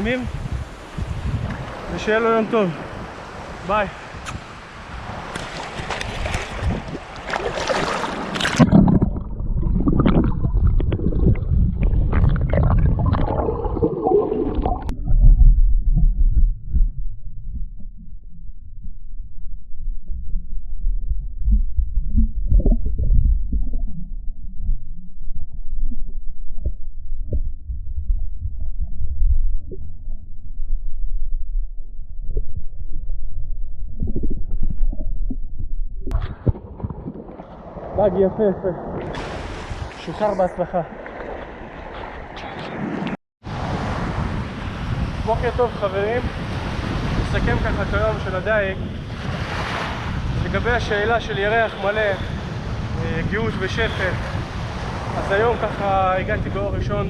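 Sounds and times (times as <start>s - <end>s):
wind buffeting microphone: 0.0s - 17.9s, 36.1s - 40.6s, 41.2s - 57.0s
water splashing in surf: 0.7s - 14.9s, 36.2s - 48.3s, 49.0s - 52.0s
muffled underwater gurgling: 8.5s - 18.0s, 20.2s - 25.0s.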